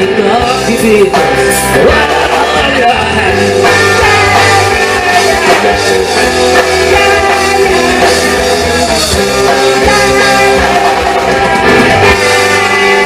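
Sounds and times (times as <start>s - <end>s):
drums keeping a beat: 0.0s - 13.0s
rock band playing: 0.0s - 13.0s.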